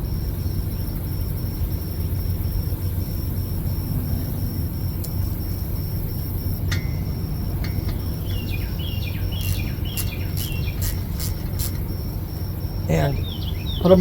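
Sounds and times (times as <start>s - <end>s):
small bird chirping: 8.1s - 12.0s, 12.8s - 14.0s.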